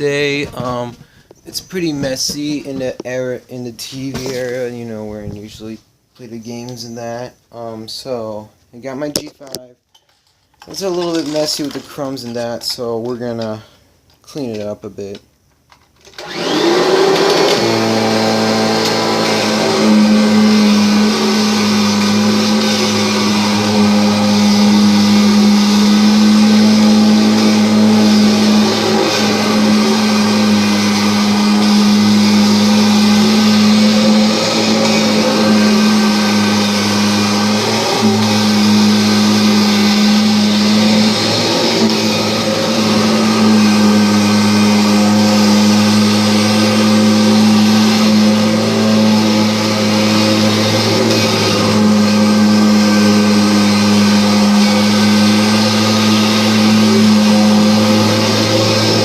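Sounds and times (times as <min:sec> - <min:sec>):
vacuum cleaner motor hum: 0:16.1 - 0:59.0.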